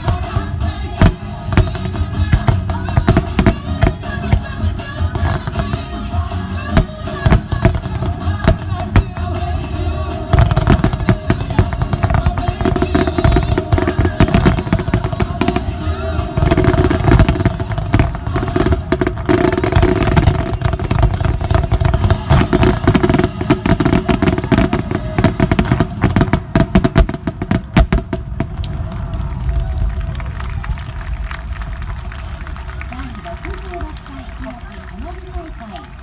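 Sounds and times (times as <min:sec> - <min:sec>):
music over loudspeakers: 0:00.0 - 0:28.0
fireworks bangs: 0:00.0 - 0:36.0.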